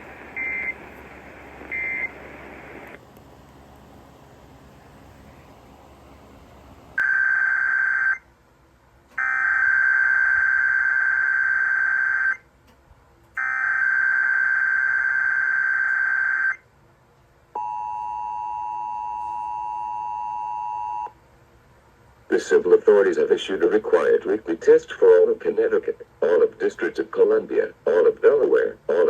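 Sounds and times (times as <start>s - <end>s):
two-tone attention signal: 0.4s - 0.8s, 1.7s - 2.2s.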